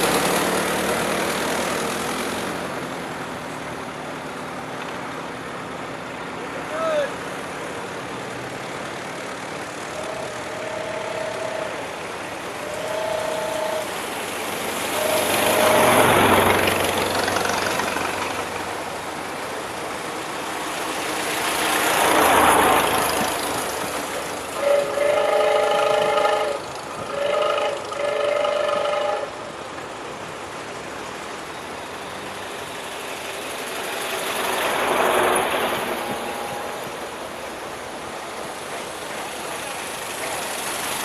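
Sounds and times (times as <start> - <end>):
old cars driving past: 0.0 - 41.0
car horn toots and blasts: 24.6 - 29.3.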